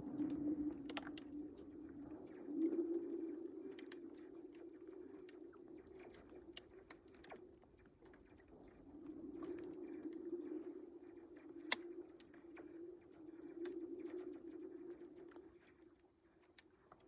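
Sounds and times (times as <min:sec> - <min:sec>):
lake ice humming drone: 0:00.0 - 0:17.0
ice ticks and cracks: 0:00.2 - 0:02.8, 0:03.6 - 0:08.5.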